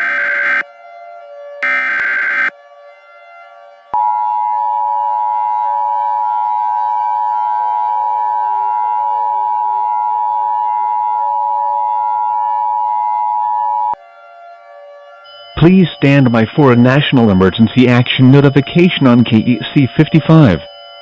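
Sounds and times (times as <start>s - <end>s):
two-tone alert signal: 15.3s - 21.0s.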